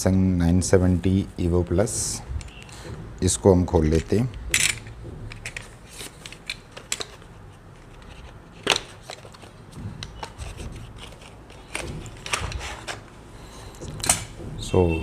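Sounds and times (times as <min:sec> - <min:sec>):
plastic packaging clicks and crinkles: 0:04.0 - 0:14.3.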